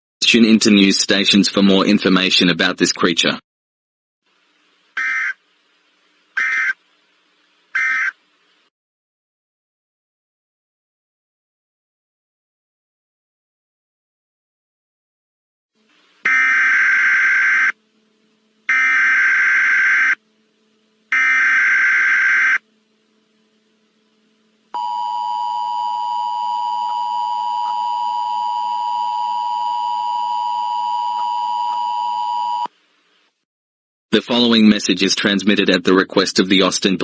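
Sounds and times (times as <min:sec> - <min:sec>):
screechy digital data tones: 0:18.7 - 0:20.2, 0:21.1 - 0:22.6.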